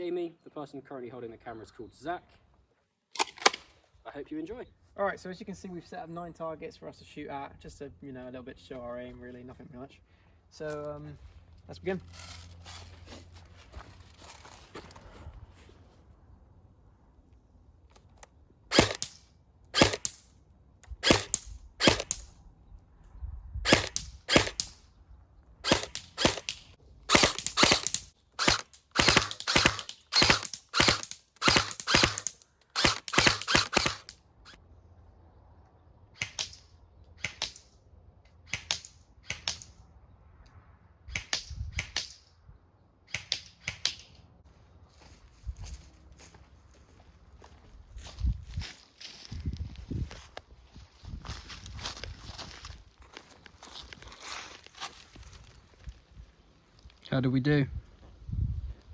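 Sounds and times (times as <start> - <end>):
airsoft gun shots: 18.7 - 19.2, 19.8 - 20.2, 21.0 - 22.3, 23.6 - 24.8, 25.6 - 34.1, 38.5 - 39.7.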